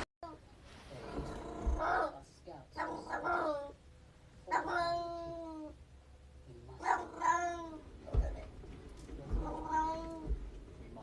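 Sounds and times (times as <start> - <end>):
cat meowing: 6.8 - 8.4, 9.3 - 10.4.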